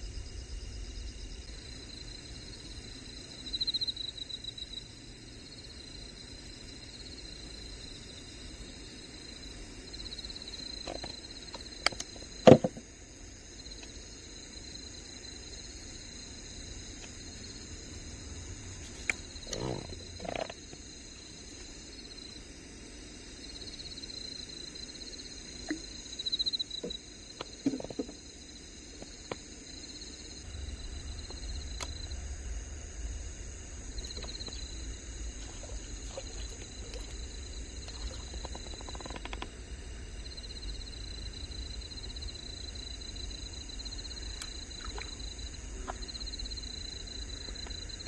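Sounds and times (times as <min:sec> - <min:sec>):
insects trilling: 0:00.0 - 0:48.0
knocks and thumps: 0:11.9 - 0:12.9.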